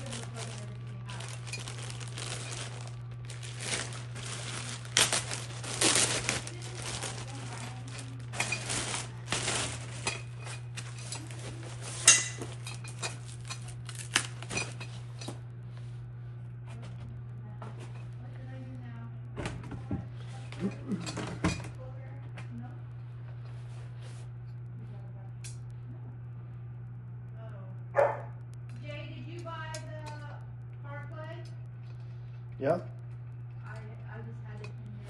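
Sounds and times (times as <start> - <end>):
packaging crinkling: 0.0 - 14.8
steady low hum: 0.0 - 35.0.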